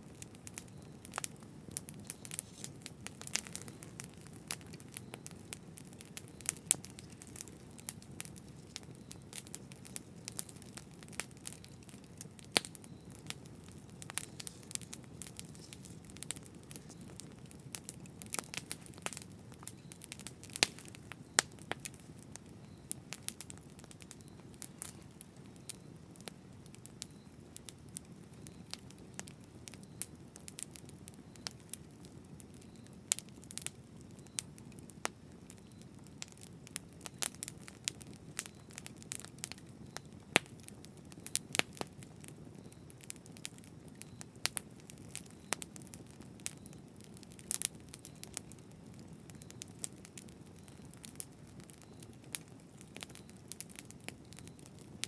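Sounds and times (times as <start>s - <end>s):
campfire crackling and popping: 0.0s - 55.0s
low rush of flames: 0.1s - 28.0s.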